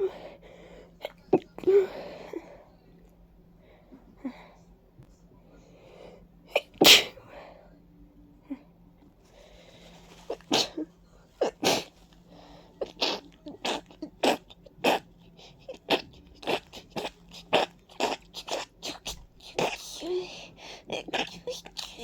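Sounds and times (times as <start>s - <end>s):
wet congested sneezes: 6.5s - 7.2s, 10.3s - 12.0s, 12.8s - 15.1s.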